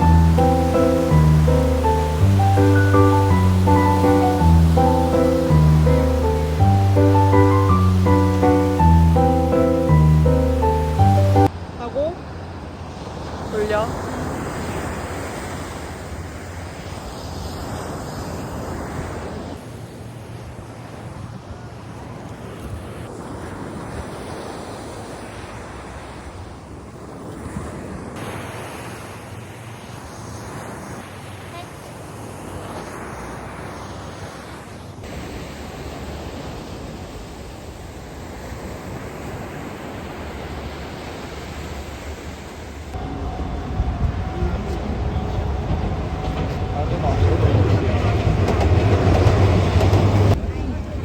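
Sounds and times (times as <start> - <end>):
surf washing onto beach: 0.0 - 11.5
ocean surf rushing: 0.0 - 21.4, 22.9 - 51.0.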